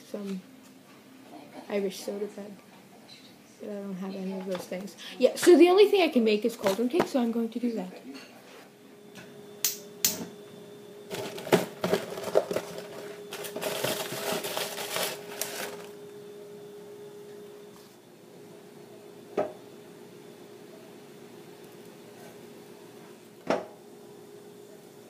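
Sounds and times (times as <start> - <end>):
faint steady hum: 0.0 - 25.0
rustling and crinkling: 11.1 - 16.0.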